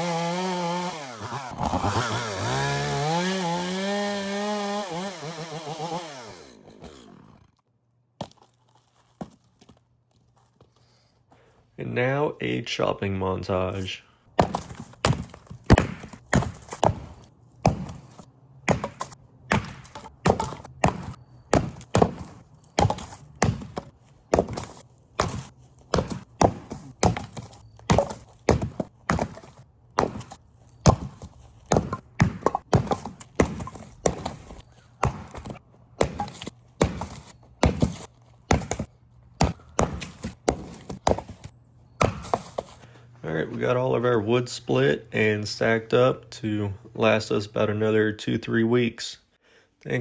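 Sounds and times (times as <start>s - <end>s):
axe splitting firewood: 0.0s - 7.4s, 14.4s - 42.9s.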